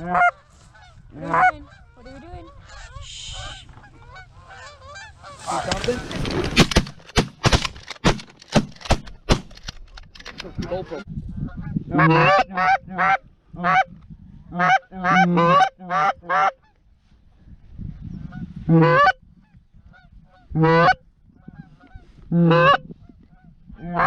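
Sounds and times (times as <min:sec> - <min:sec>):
goose honking: 0:00.0 - 0:06.2, 0:10.6 - 0:13.9, 0:14.5 - 0:16.7, 0:18.3 - 0:19.2, 0:19.9 - 0:22.9, 0:23.8 - 0:24.0.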